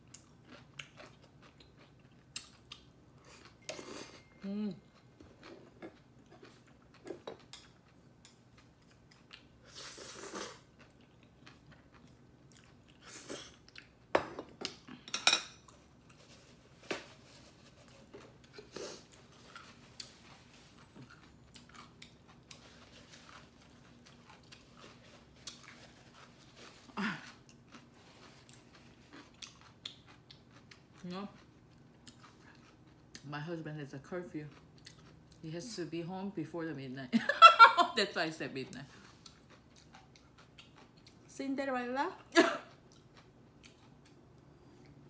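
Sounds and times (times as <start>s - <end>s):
person chewing: 0.0s - 16.6s, 17.3s - 33.3s, 34.5s - 35.4s, 39.0s - 41.3s, 42.7s - 45.0s.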